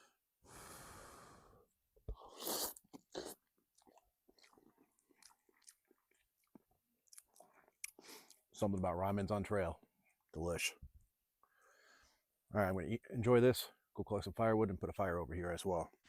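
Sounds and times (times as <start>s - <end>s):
quiet wet chewing: 2.0s - 8.9s
noodle slurping noises: 2.2s - 6.3s.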